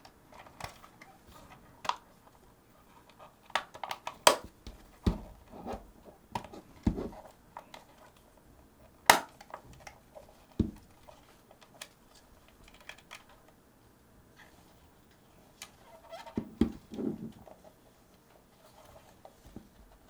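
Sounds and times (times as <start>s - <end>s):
dull knocks: 6.8s - 7.2s
small clicks and taps of handling: 9.1s - 13.6s.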